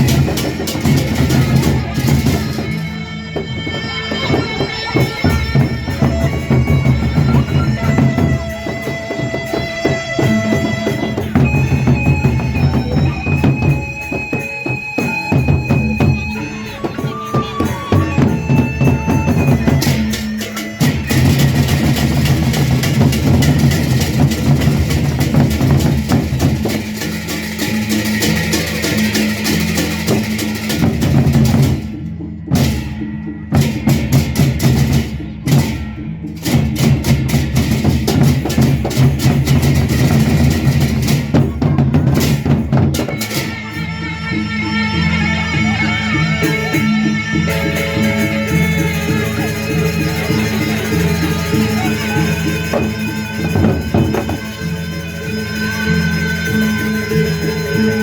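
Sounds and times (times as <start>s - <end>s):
reed wind instrument melody: 0.0s - 32.5s, 39.2s - 58.0s
fast drumming: 0.0s - 43.8s, 46.4s - 58.0s
pounding low drums: 0.0s - 58.0s
hard drum strokes: 46.4s - 56.2s
metallic cymbal wash: 46.5s - 58.0s.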